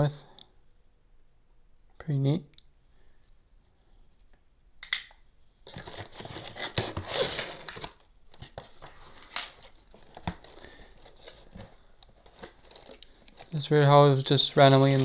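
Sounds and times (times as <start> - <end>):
packaging crinkling: 5.7 - 15.0.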